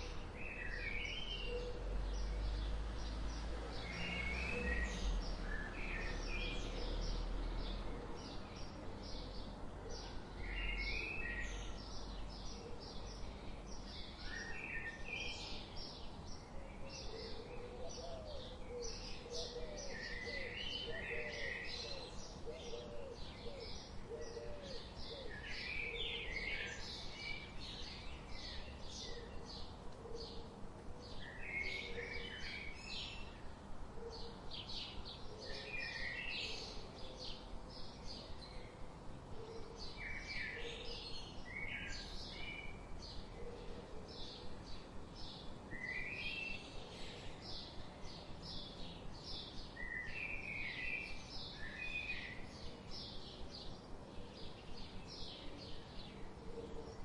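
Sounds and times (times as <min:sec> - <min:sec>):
birds chirping and singing: 0:00.0 - 0:33.4.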